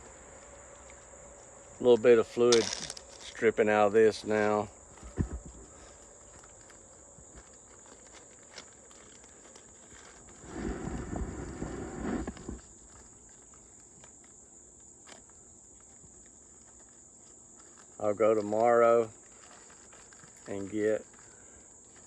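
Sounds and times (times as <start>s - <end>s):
rustling and scuffing: 0.0s - 14.2s
high insect drone: 0.0s - 22.0s.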